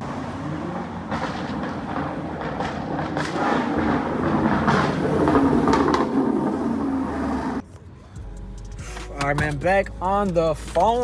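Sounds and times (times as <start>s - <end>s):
loud car engine rumble: 0.0s - 11.0s
sharp exhaust pops: 1.0s - 6.9s.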